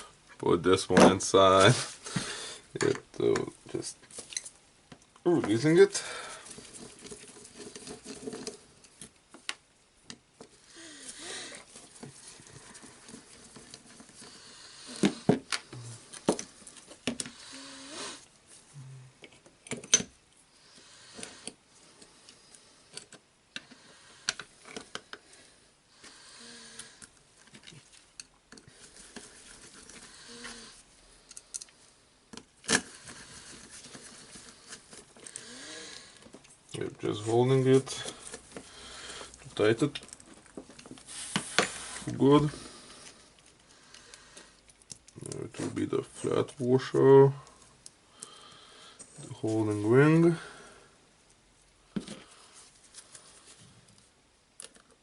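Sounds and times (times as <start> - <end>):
small parts clicking and tapping: 26.8 - 30.1, 31.2 - 32.9, 43.4 - 45.5, 53.9 - 55.0
faint rustling: 32.9 - 54.2.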